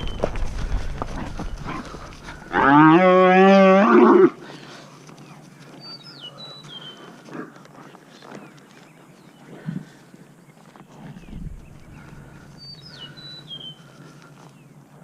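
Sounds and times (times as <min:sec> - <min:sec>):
cow mooing: 0:02.5 - 0:04.4.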